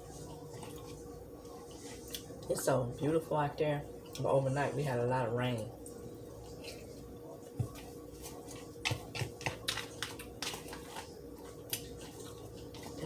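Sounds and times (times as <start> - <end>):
faint steady hum: 0.0 - 13.0
person chewing crisp food: 8.1 - 13.0.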